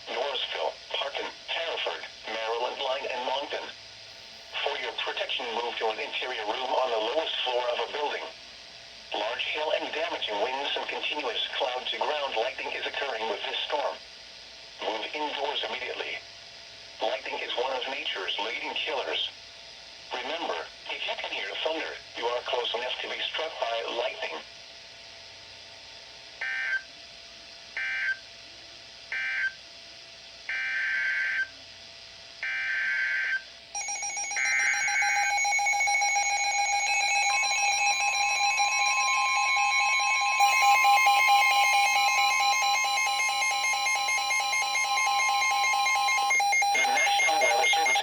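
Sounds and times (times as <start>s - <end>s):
buzzy data bursts: 33.8s - 48.0s
two-tone attention signal: 33.8s - 48.0s.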